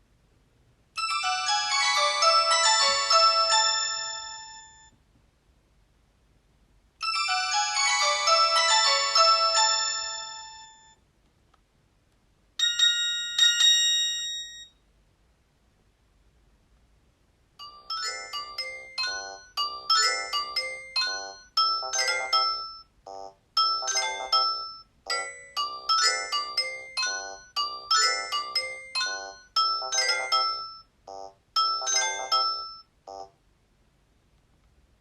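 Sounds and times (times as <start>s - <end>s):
phone ringtone melody: 1.0s - 4.9s, 7.0s - 11.0s, 12.6s - 14.7s, 17.6s - 33.3s.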